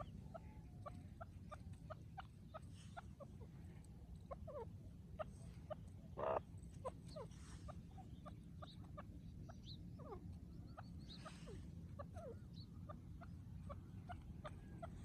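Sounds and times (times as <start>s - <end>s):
birds chirping and calling: 0.0s - 15.0s
low steady rumble: 0.0s - 15.0s.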